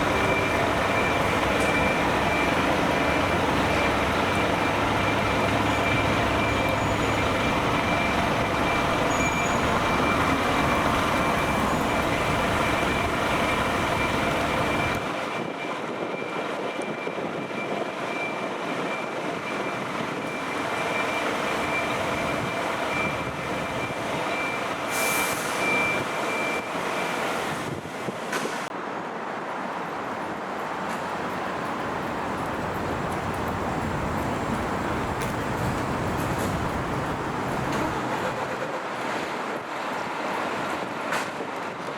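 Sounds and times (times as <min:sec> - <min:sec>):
truck diesel engine running: 0:00.0 - 0:15.3, 0:20.5 - 0:25.5, 0:30.2 - 0:40.9
reversing beeper beeps: 0:00.0 - 0:27.2.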